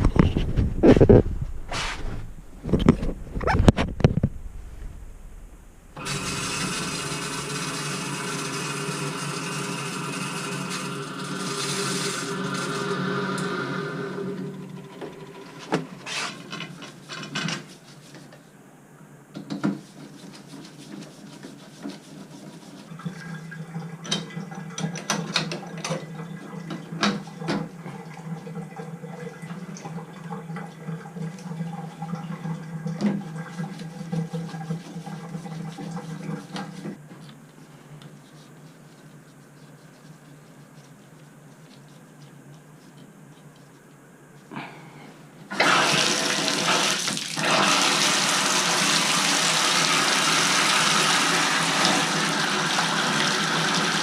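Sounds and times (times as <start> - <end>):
steady hum: 0.0 - 8.8
water running: 5.9 - 16.5, 19.9 - 37.0, 45.5 - 54.0.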